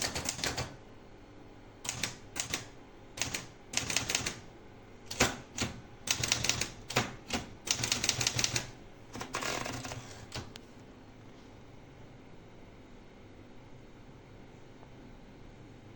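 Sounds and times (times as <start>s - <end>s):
typewriter keys clacking: 0.0s - 0.8s, 1.9s - 4.4s, 5.1s - 10.5s
typewriter rasping: 0.0s - 0.8s, 1.9s - 4.4s, 5.1s - 10.5s.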